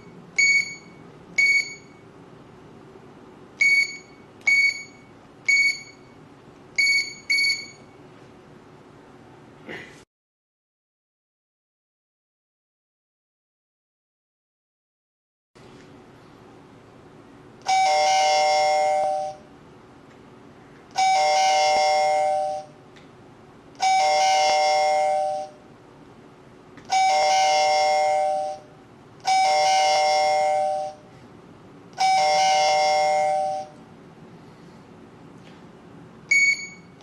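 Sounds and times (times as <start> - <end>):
alarm door chime: 0.0 - 2.1, 3.6 - 6.2, 6.8 - 7.9, 17.6 - 19.5, 21.0 - 22.8, 23.8 - 25.6, 26.9 - 31.0, 32.0 - 33.8, 36.3 - 37.0
low steady hum: 0.0 - 10.0, 15.6 - 37.0.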